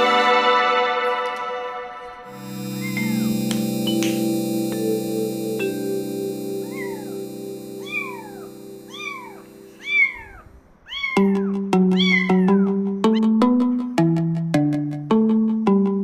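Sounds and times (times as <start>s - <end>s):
soft background music: 0.0s - 10.3s, 11.0s - 16.0s
bright mallet melody: 2.3s - 9.8s
kitten meowing: 7.8s - 13.2s.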